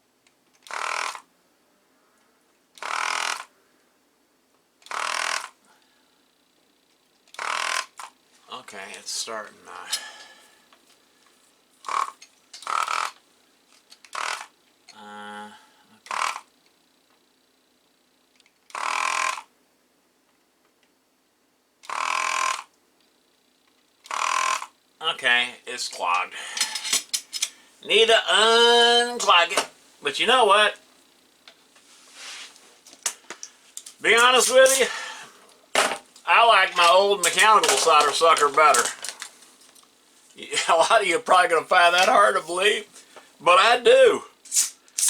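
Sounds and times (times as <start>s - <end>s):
desoldering gun pump buzzing: 0.6s - 1.2s, 2.8s - 3.5s, 4.8s - 5.6s, 7.3s - 8.1s, 11.8s - 13.2s, 14.1s - 14.5s, 16.0s - 16.5s, 18.7s - 19.5s, 21.8s - 22.7s, 24.0s - 24.7s.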